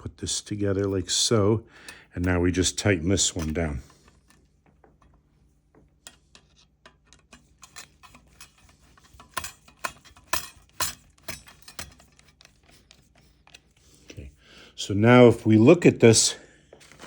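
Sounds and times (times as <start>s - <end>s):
metallic clicks of screw tightening: 6.0s - 13.7s.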